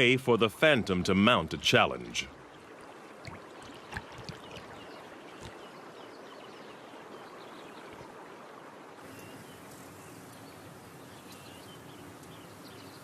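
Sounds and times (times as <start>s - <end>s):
river running water: 0.0s - 13.0s
small splashes: 2.6s - 5.8s.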